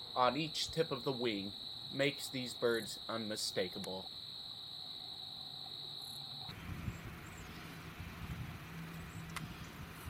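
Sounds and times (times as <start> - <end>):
insects trilling: 0.0 - 9.9
low outdoor rumble: 6.5 - 10.0.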